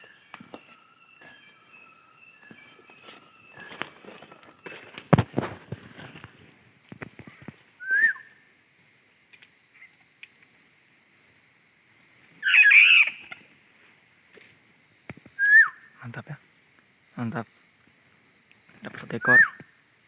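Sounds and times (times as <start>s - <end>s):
whistled bird call: 7.8s - 8.4s, 12.4s - 13.4s, 15.4s - 15.9s, 19.1s - 19.6s
tangled bird call: 12.4s - 13.5s, 15.4s - 15.9s.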